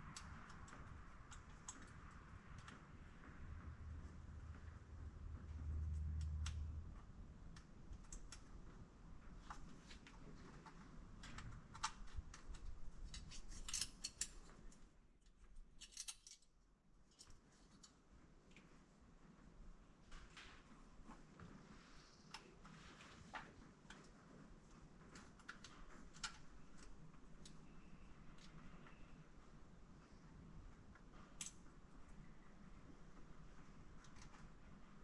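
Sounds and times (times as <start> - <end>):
light clicks and clinks: 15.8 - 18.7.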